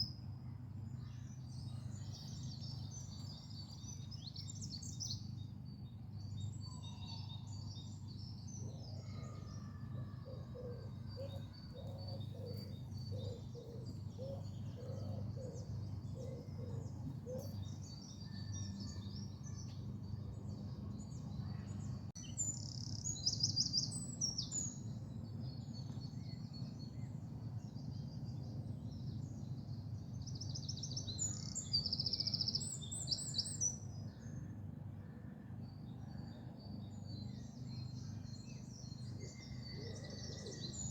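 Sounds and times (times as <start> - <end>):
songbirds singing and chirping: 0.0 - 40.9
repeated low bird calls: 6.6 - 22.1.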